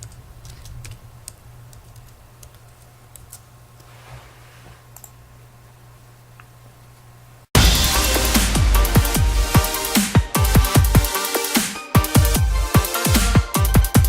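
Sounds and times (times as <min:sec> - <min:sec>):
steady low hum: 0:00.0 - 0:11.1.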